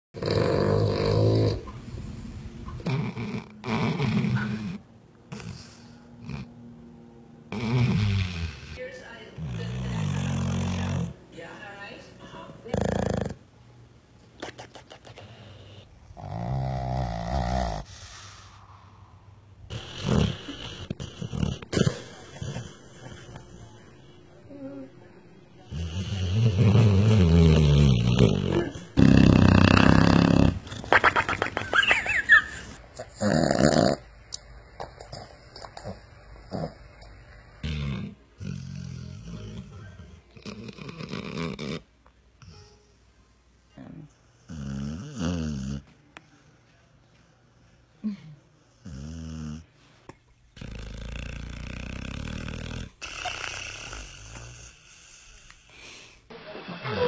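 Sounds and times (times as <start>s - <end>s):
dog snoring: 0.2s - 1.7s, 2.8s - 6.6s, 7.5s - 8.8s, 9.4s - 11.2s, 12.7s - 13.4s, 15.0s - 18.6s, 19.7s - 24.8s, 25.6s - 30.8s, 32.6s - 34.1s, 37.6s - 42.6s, 44.3s - 45.9s, 48.8s - 49.7s, 50.6s - 56.1s.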